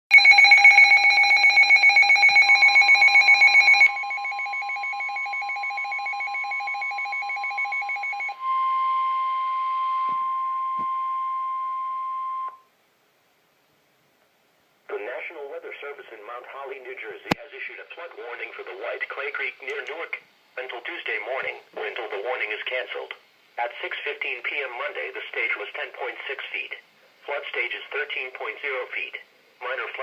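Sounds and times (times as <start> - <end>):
pulsing ringing alarm tone: 0.1 - 12.7.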